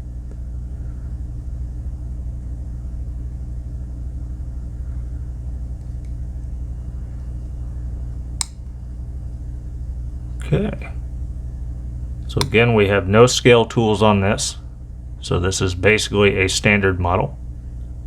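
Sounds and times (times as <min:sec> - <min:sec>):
low mechanical hum: 0:00.0 - 0:18.0
sharp click: 0:08.4 - 0:08.6.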